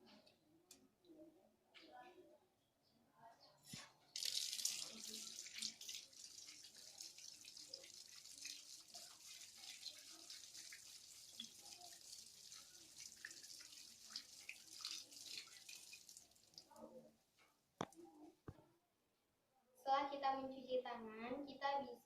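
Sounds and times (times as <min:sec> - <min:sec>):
hands washing under water: 0:04.2 - 0:16.8
tap water running into sink: 0:04.2 - 0:16.8.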